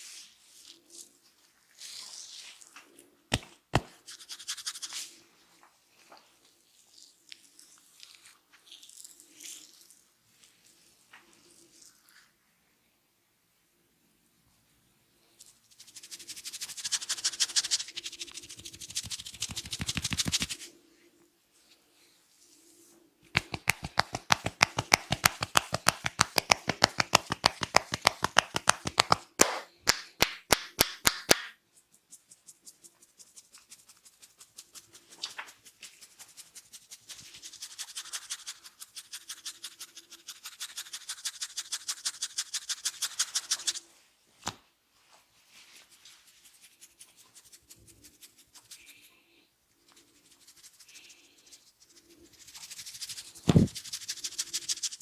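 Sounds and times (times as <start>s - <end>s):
quick sharp pats on head: 3.3s - 4.8s, 18.4s - 20.6s, 23.4s - 31.6s, 53.4s - 54.4s
hands rubbing and scratching hair: 3.3s - 5.2s, 15.7s - 20.8s, 22.8s - 49.2s, 49.8s - 55.0s.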